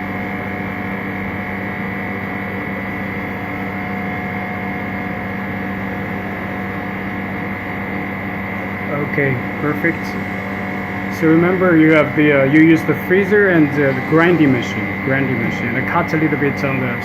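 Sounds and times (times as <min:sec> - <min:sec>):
steady machine hum: 0:00.0 - 0:17.0.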